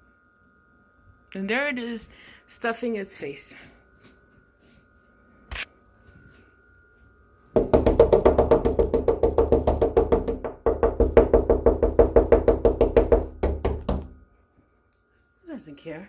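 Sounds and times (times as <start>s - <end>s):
rapid loud knocking: 7.6s - 14.2s.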